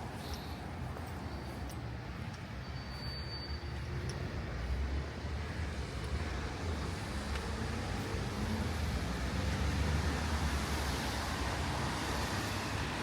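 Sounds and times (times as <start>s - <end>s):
traffic on wet street: 0.0s - 13.0s
vehicle rumble: 0.0s - 13.0s
thin high whistle: 2.7s - 3.8s.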